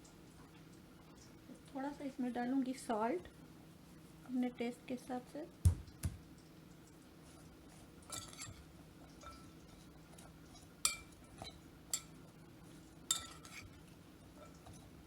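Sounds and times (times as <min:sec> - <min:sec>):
metal utensil clinking against bowl: 0:08.1 - 0:08.6, 0:10.6 - 0:12.2, 0:13.1 - 0:13.7.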